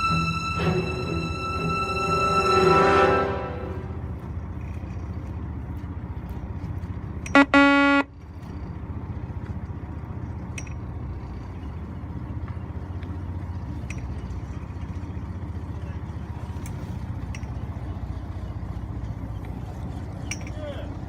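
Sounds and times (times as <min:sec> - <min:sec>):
horn tone: 0:00.0 - 0:04.2, 0:07.3 - 0:08.2
boat engine rumbling: 0:00.0 - 0:21.0.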